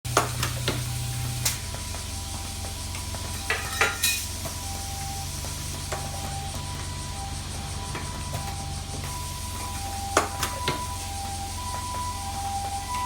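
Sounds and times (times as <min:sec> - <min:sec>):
parts feeder humming: 0:00.0 - 0:13.0
metallic clanks of mechanism: 0:03.0 - 0:04.3.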